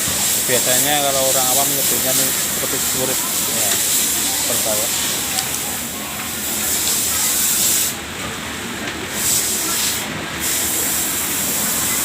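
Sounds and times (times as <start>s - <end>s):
steady background hiss: 0.0s - 8.0s.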